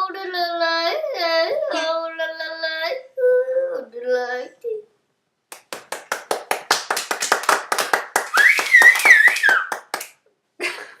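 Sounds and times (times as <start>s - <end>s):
hands clapping: 5.5s - 10.2s.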